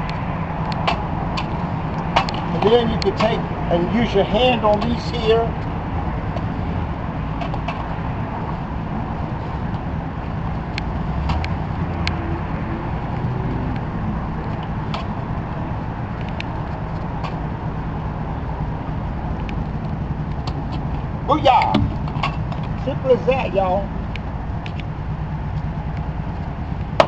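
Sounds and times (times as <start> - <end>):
low outdoor rumble: 0.0 - 27.0.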